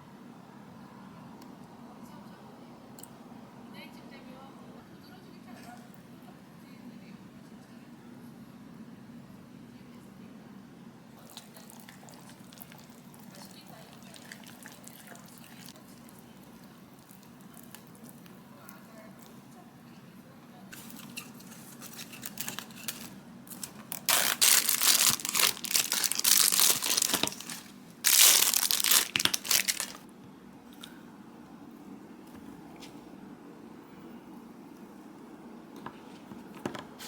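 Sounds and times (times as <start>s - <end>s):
crinkly material rustling: 20.8s - 30.0s.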